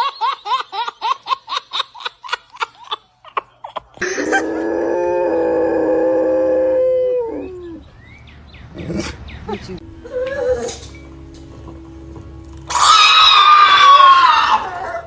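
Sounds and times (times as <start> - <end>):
dog howling: 4.2 - 7.8, 10.0 - 11.0, 12.7 - 15.0.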